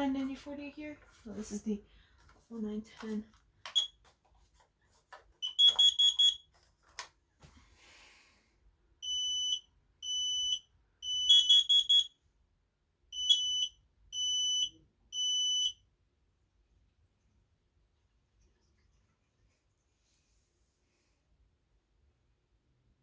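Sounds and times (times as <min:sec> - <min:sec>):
smoke alarm long beeps: 0:03.7 - 0:03.9, 0:05.4 - 0:06.4, 0:09.0 - 0:12.2, 0:13.1 - 0:15.8
alarm short beeps: 0:05.4 - 0:06.4, 0:09.0 - 0:12.1.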